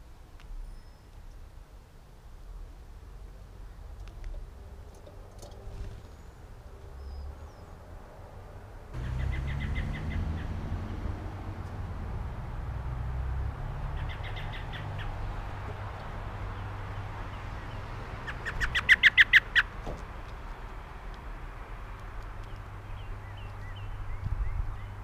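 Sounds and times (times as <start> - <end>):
soft bird chirps: 0.6 - 1.4, 13.9 - 15.3
songbird calling in rapid notes: 9.0 - 10.6, 13.9 - 15.3, 17.6 - 19.7.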